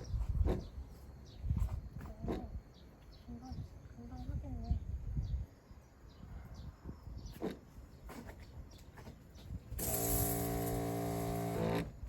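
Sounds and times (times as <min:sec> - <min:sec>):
faint bird chirps: 0:00.0 - 0:09.6
motorized sprayer humming and hissing: 0:09.8 - 0:12.0.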